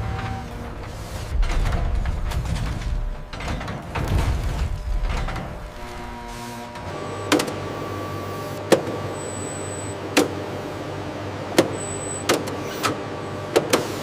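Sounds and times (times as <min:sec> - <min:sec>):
mechanical clanks: 0:00.0 - 0:07.6
factory machinery humming: 0:00.0 - 0:14.0.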